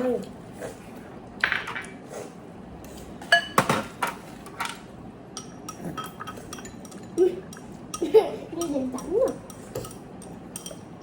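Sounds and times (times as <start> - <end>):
utensils clinking against a bowl: 2.8 - 11.0.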